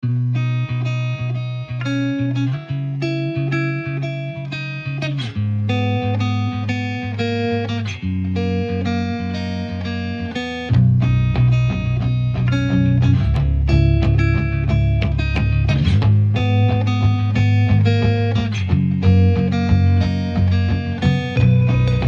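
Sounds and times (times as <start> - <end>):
plucked guitar music: 0.0 - 22.0
bass line: 8.0 - 22.0.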